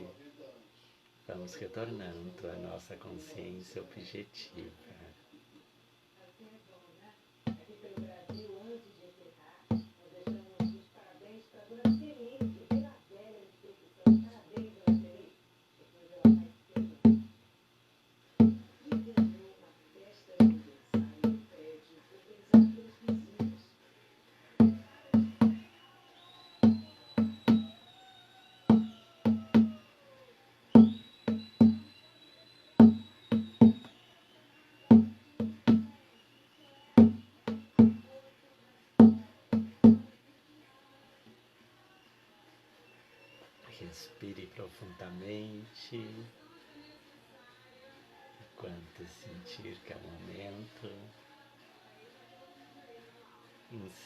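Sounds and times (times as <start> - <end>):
hand drum strikes: 7.5 - 8.5, 9.7 - 10.8, 11.8 - 12.9, 14.1 - 15.2, 16.3 - 17.4, 18.4 - 19.4, 20.4 - 21.5, 22.6 - 23.6, 24.6 - 25.7, 26.6 - 27.7, 28.7 - 29.8, 30.8 - 31.9, 32.8 - 33.9, 34.9 - 35.9, 37.0 - 38.1, 39.0 - 40.1.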